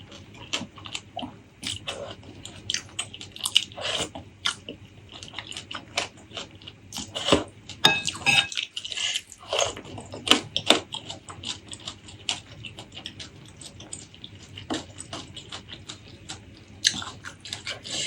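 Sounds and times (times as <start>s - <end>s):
utensil clinking against dish: 7.8s - 8.6s
wet chewing: 8.6s - 18.0s.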